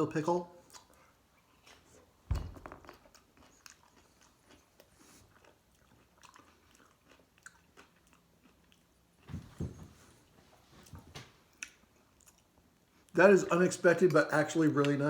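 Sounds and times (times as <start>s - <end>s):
crunchy chewing: 2.8s - 9.0s.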